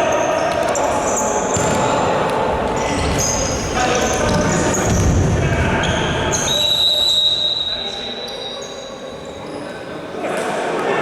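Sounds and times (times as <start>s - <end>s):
shoes squeaking on court floor: 0.0s - 9.9s
ball and foot thuds: 0.4s - 5.6s.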